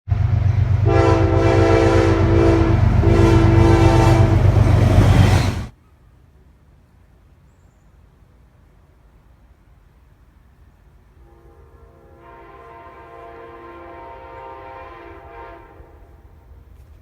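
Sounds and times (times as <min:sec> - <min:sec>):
diesel locomotive engine rumble: 0:00.1 - 0:17.0
train horn blasts: 0:00.8 - 0:05.6, 0:11.2 - 0:16.6.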